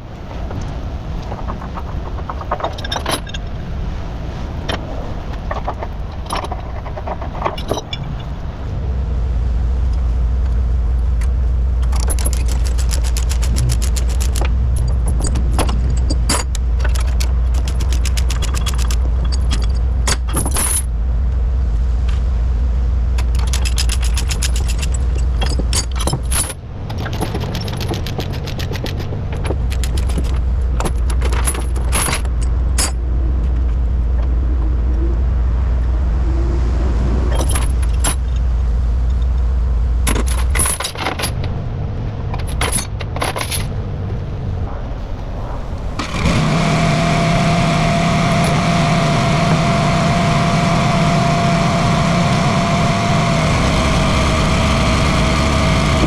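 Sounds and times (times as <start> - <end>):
steel chains rattling: 2.4 - 3.4, 11.9 - 20.9, 23.2 - 33.0
engine idling: 45.6 - 56.0.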